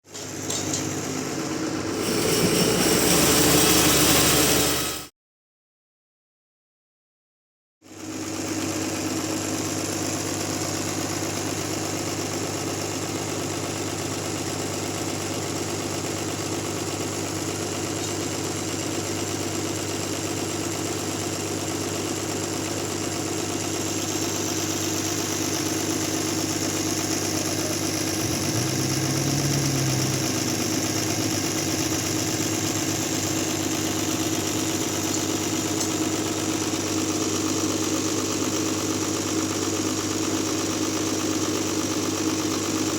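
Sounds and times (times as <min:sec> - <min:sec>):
sawmill machine running: 0:00.1 - 0:05.1, 0:08.1 - 0:42.9
short low tone: 0:27.4 - 0:32.8.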